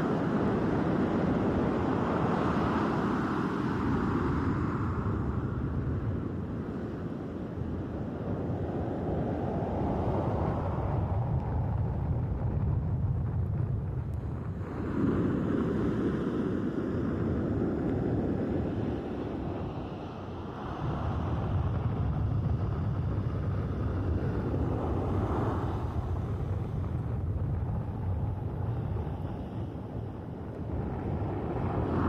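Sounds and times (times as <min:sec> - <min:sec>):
waves breaking on shore: 0:14.6 - 0:22.8, 0:23.5 - 0:27.0.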